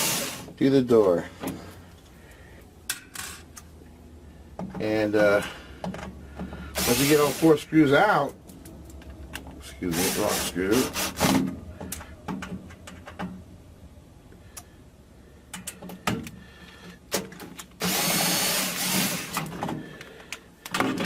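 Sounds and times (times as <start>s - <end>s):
drill driver running: 0.0s - 0.5s, 6.8s - 7.6s, 9.9s - 11.4s, 17.8s - 19.5s.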